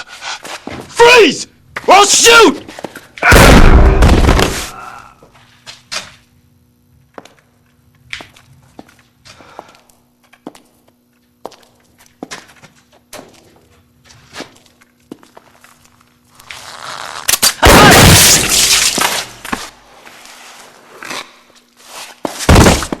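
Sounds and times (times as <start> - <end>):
shotgun blast: 3.3 - 4.8, 17.5 - 19.3.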